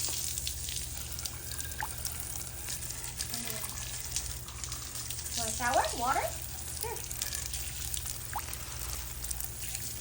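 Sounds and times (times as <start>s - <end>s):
water running from tap: 0.0s - 10.0s.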